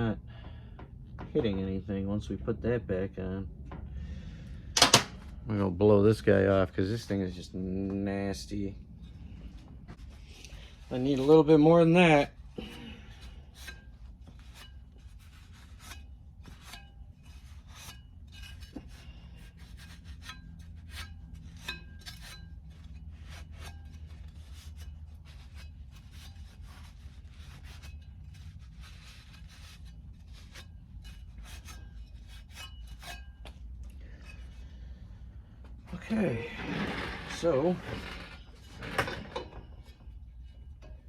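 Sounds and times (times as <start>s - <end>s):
steady low hum: 0.0s - 41.0s
scraping and rubbing strokes: 8.4s - 41.0s.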